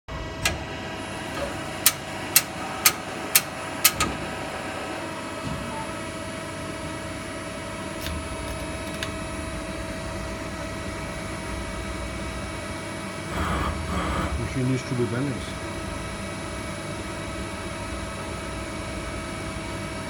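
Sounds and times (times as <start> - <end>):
lathe humming and whining: 0.1 - 20.0
sharp clicks: 1.8 - 4.1.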